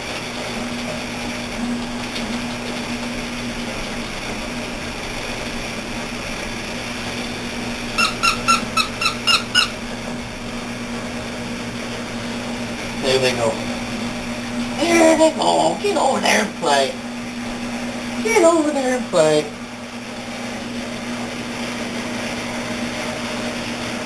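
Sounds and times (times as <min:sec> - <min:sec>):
low hum: 0:00.0 - 0:18.3
puppies squeaking: 0:08.0 - 0:09.8.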